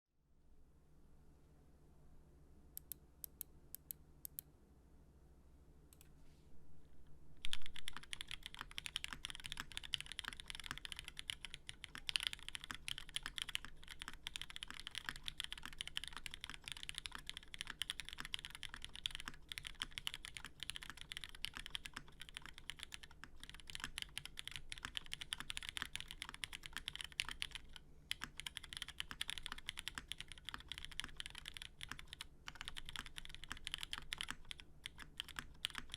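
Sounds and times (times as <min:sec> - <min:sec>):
typing on mechanical keyboard: 0:07.4 - 0:35.9.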